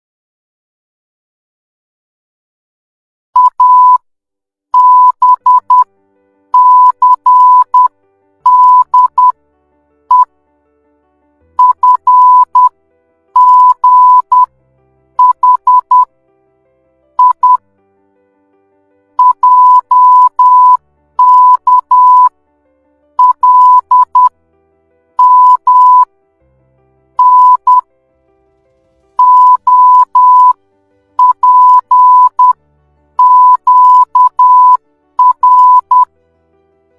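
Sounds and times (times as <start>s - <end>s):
morse code beeps: 3.4s - 4.0s, 4.8s - 5.9s, 6.6s - 9.4s, 11.6s - 12.7s, 13.4s - 14.5s, 15.2s - 16.1s, 17.2s - 17.6s, 19.2s - 22.3s, 23.2s - 24.3s, 25.2s - 26.1s, 27.2s - 27.8s, 29.2s - 30.6s, 31.2s - 32.6s, 33.2s - 36.1s.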